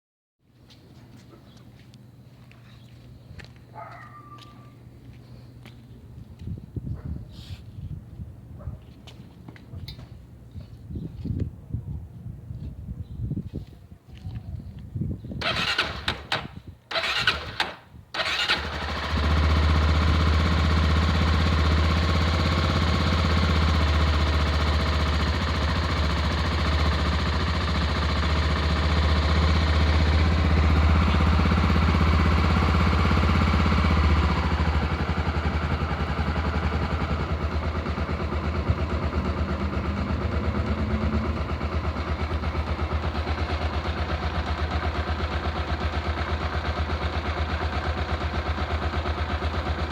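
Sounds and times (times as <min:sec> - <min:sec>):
motorcycle engine starting and idling: 0:15.4 - 0:49.9.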